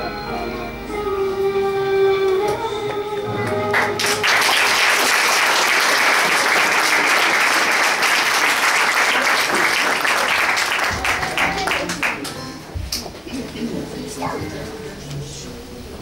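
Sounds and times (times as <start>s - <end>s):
congregation applauding: 3.4s - 12.5s.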